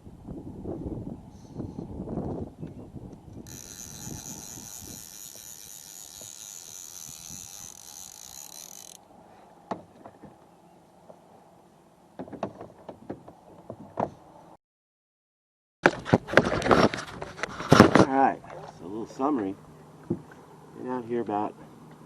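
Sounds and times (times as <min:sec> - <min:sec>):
water lapping around a canoe: 0:17.5 - 0:19.2.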